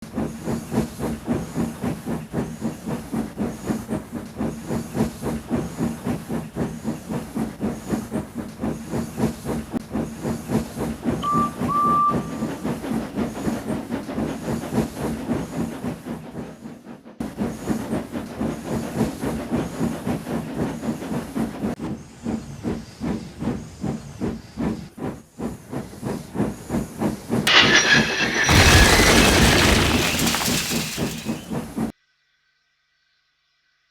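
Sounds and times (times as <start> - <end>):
train whistle toot: 11.2 - 12.5
loud noisy burst: 27.5 - 31.4
low hum: 27.5 - 31.4.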